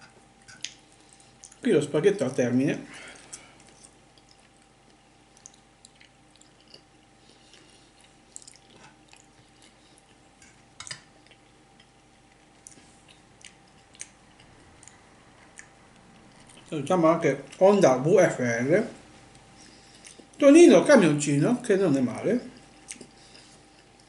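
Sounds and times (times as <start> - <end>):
wet chewing and mouth clicks: 3.2 - 16.8, 19.3 - 20.4, 22.6 - 24.0.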